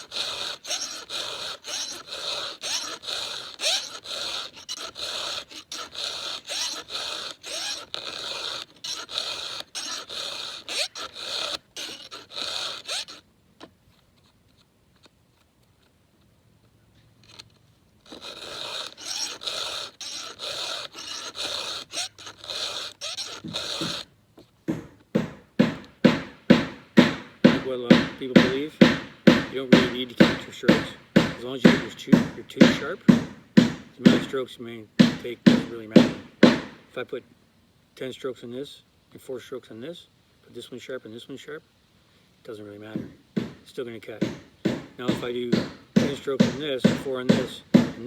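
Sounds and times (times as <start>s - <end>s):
file rasping on chainsaw chain: 0.0s - 13.3s, 17.2s - 24.1s, 24.7s - 36.9s, 42.6s - 48.0s
dull knocks: 24.6s - 34.3s, 35.0s - 36.8s, 43.0s - 48.0s.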